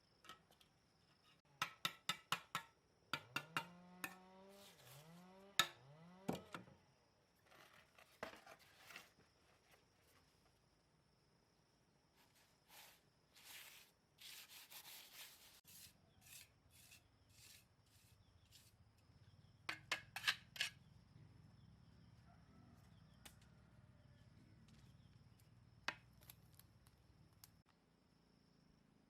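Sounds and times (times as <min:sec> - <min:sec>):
scraping strokes: 0:04.5 - 0:05.2, 0:12.2 - 0:18.8.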